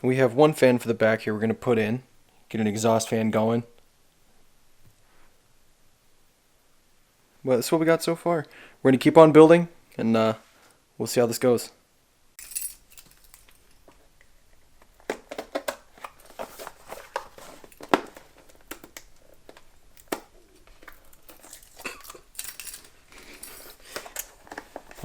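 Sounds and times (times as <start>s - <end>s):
cardboard and plastic crinkling: 14.8s - 25.0s.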